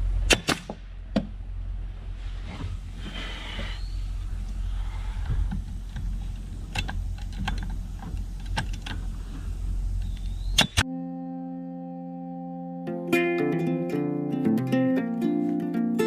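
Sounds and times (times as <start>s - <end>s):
low rumble: 0.0s - 10.5s
nailer shots into wood: 0.3s - 1.3s
acoustic guitar music: 10.8s - 16.0s.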